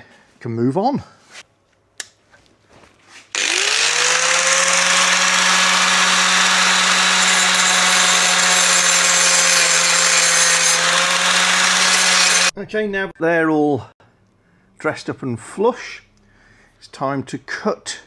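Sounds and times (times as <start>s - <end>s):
angle grinder grinding steel: 3.4s - 12.5s.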